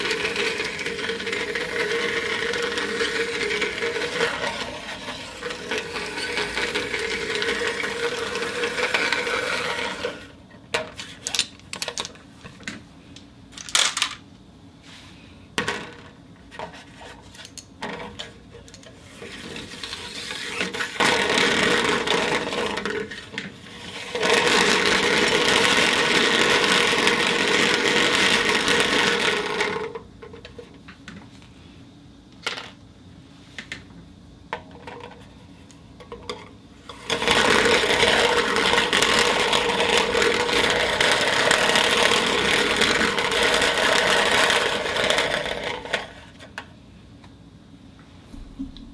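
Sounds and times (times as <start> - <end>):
marbles rattling on a turntable: 0.0 - 10.3, 13.6 - 14.2, 19.5 - 23.3, 24.0 - 29.9, 36.9 - 46.2.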